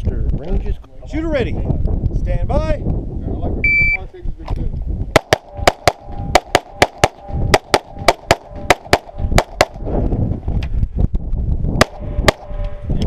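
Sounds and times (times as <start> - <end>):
pistol shots: 5.2 - 9.8.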